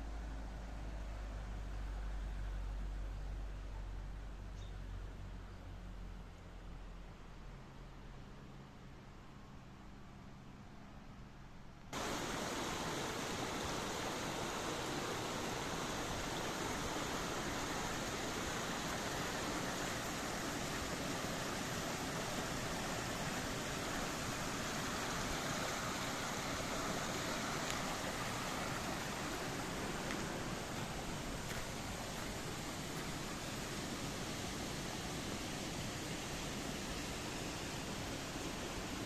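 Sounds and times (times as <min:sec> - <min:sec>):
flowing water rushing: 0:12.0 - 0:39.0.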